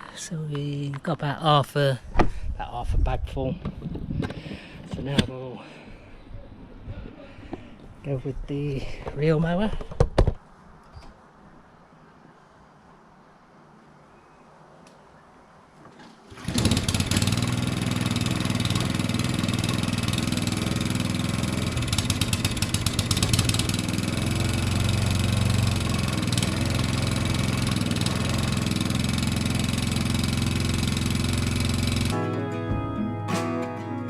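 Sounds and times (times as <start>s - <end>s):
lawnmower engine running: 16.0s - 34.0s
acoustic guitar music: 27.3s - 34.0s.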